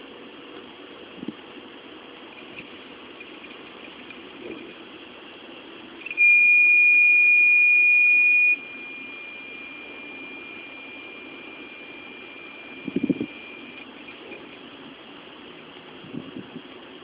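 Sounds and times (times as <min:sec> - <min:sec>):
hard drive whine: 0:00.0 - 0:17.0
high-pitched beep-like tone: 0:06.0 - 0:14.6.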